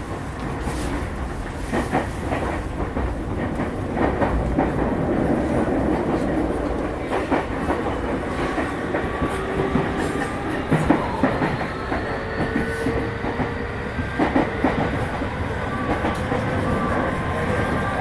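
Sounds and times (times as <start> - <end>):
clacks over rail joints: 0.0 - 13.5
train wheels rumbling on rail: 0.0 - 18.0.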